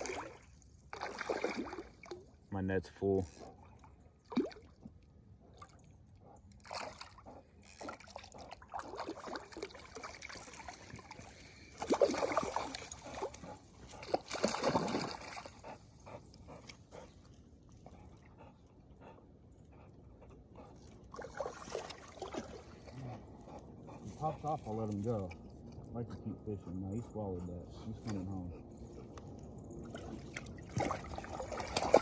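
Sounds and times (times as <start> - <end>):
fish thrashing and splashing in water: 0.0 - 2.3, 4.2 - 4.8, 6.6 - 15.6, 21.1 - 22.9, 29.9 - 32.0.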